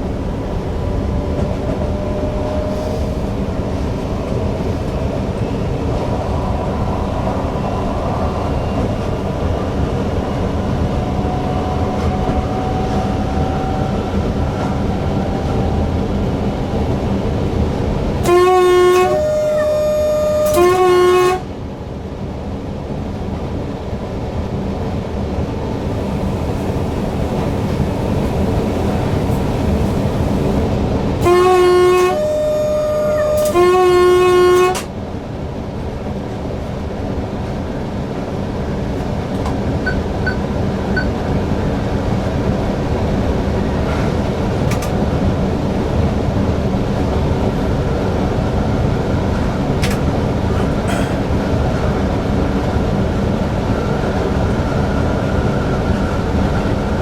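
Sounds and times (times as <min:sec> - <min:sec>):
train rolling noise in cab: 0:00.0 - 0:57.0
train horn blasts: 0:18.2 - 0:21.6, 0:31.2 - 0:34.9.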